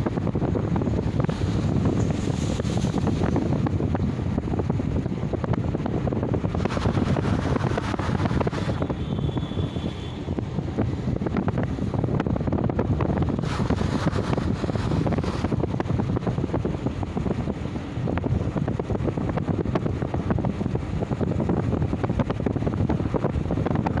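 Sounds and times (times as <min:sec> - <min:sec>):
wind buffeting microphone: 0:00.0 - 0:24.0
wave crashing with hiss: 0:13.4 - 0:15.6
ocean waves breaking: 0:13.4 - 0:15.7.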